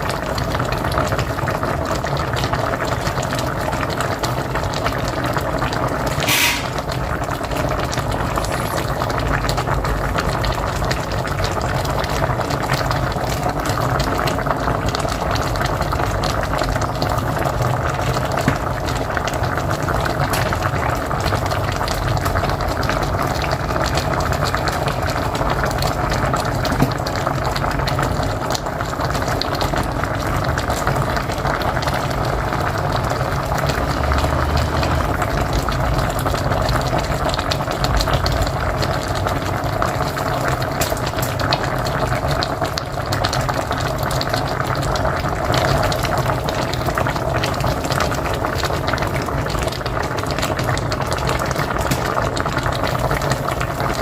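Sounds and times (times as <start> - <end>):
pot boiling with bubbling pops: 0.0 - 54.0.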